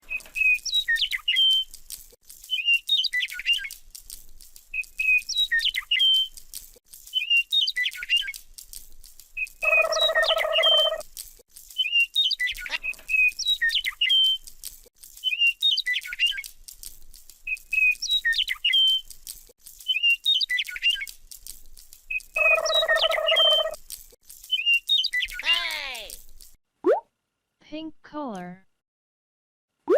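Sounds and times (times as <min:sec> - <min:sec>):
electronic bird chirp: 0:09.6 - 0:11.0, 0:22.4 - 0:23.8.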